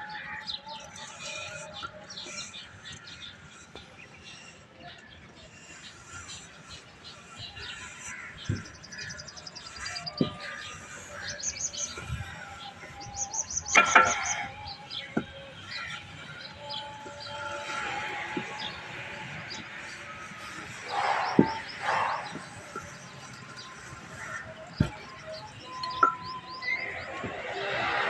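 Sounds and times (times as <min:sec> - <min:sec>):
birds chirping: 0:00.0 - 0:28.0.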